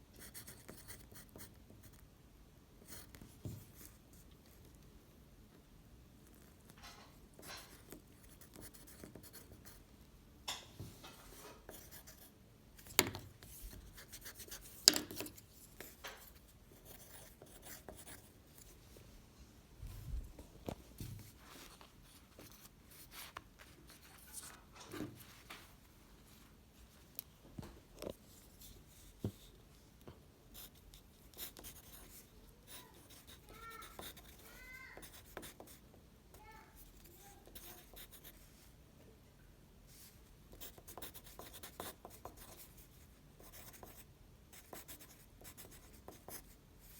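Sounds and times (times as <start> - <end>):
paper rustling and crinkling: 20.7 - 26.5.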